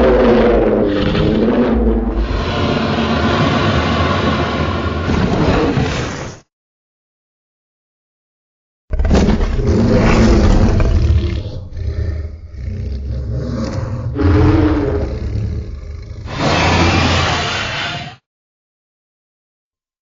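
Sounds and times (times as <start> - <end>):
long deep dinosaur roar: 0.0 - 5.1, 9.0 - 18.2.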